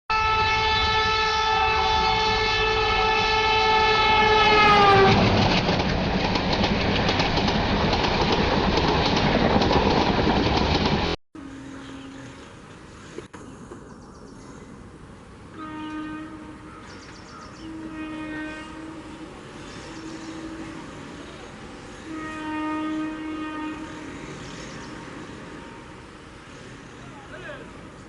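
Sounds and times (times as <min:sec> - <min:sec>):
locomotive horn blast: 0:00.1 - 0:05.3, 0:15.5 - 0:16.8, 0:17.5 - 0:26.2
train wheels rumbling and clattering: 0:04.6 - 0:11.2.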